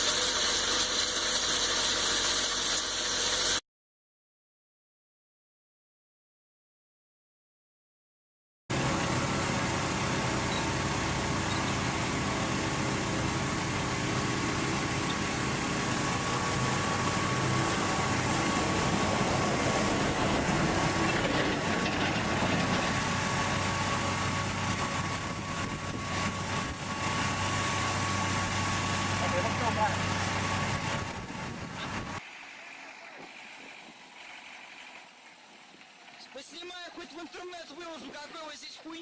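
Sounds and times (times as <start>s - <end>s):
construction machinery engine drone: 0.0s - 3.6s, 8.7s - 38.6s.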